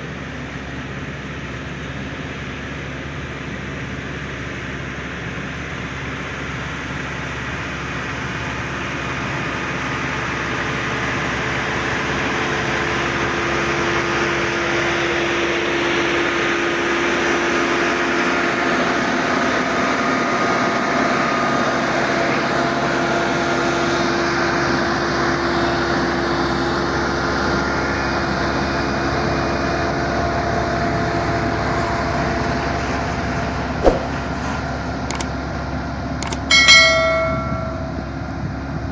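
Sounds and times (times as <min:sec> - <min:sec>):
sharp click: 0:33.8 - 0:34.2, 0:36.2 - 0:38.0.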